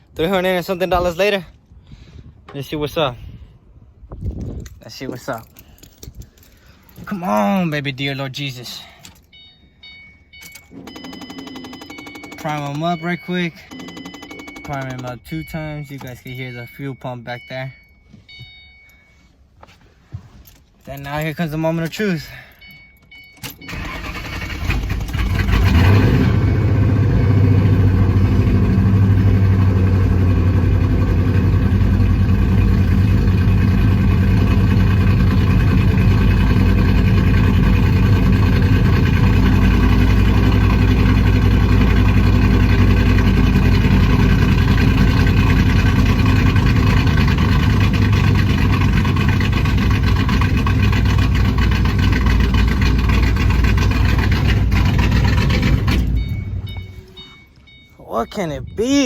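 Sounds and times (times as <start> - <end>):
car engine starting and idling: 20.5 - 59.0.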